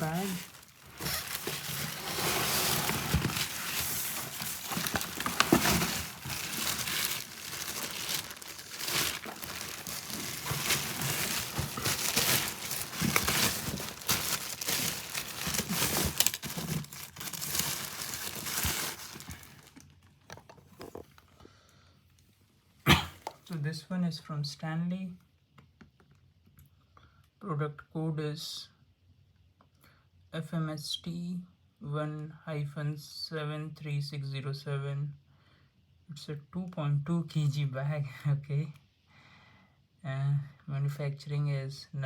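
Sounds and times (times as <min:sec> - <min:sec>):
plastic packaging crinkling: 0:00.0 - 0:20.2.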